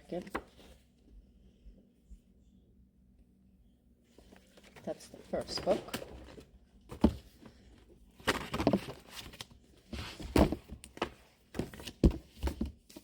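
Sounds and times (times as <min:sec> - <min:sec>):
books thudding down: 0:05.5 - 0:07.4, 0:10.0 - 0:12.8.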